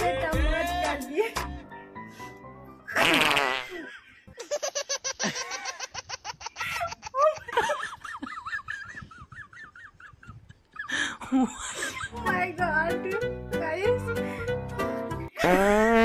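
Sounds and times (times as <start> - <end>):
high-pitched laughter: 2.9 - 12.2.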